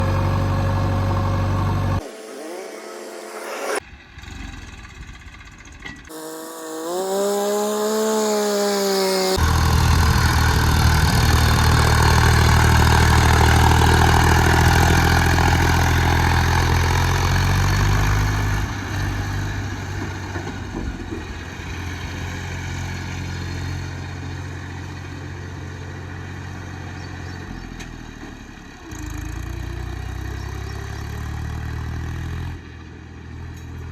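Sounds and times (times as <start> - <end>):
heavy diesel engine running: 0.0 - 2.1, 9.0 - 30.9.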